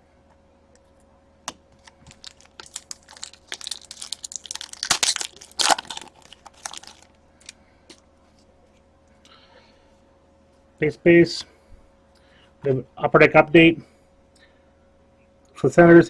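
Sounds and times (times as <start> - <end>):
faint steady hum: 0.0 - 16.0
cards and packaging rustling: 1.8 - 7.6.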